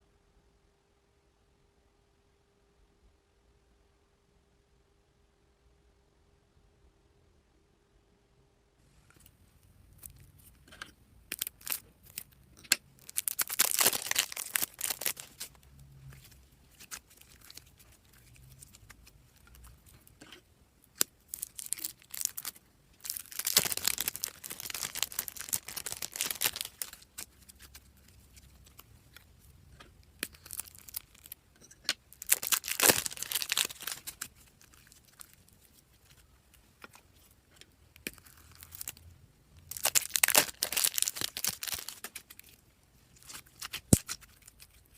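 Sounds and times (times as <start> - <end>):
slime squishing and popping: 11.2 - 35.6, 39.6 - 42.6, 43.2 - 44.8.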